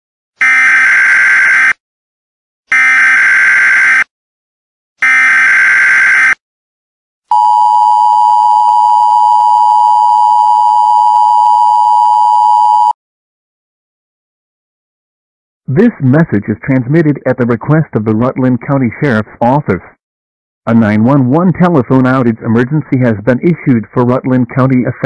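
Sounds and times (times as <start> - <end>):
steady emergency attention tone: 7.3 - 13.0.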